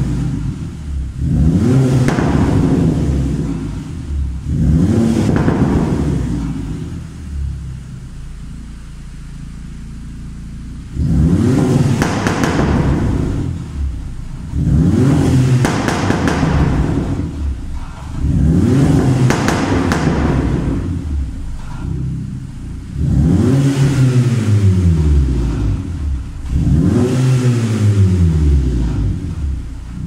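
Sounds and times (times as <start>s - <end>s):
exhaust pops and crackles: 0.0s - 7.0s, 8.0s - 24.1s
car engine revving: 0.0s - 30.0s.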